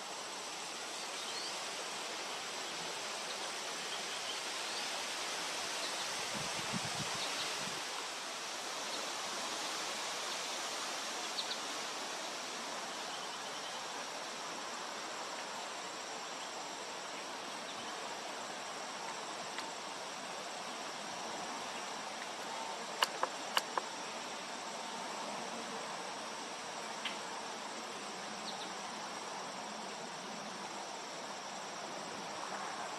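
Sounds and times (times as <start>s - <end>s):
insects trilling: 0.0s - 32.9s
sharp clicks: 23.0s - 23.8s.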